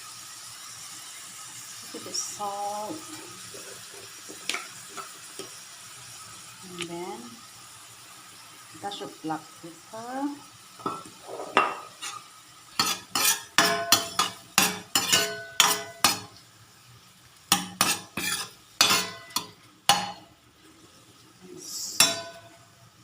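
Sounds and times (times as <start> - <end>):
utensil clinking and scraping pan: 10.8 - 16.4, 17.5 - 20.3, 22.0 - 22.6.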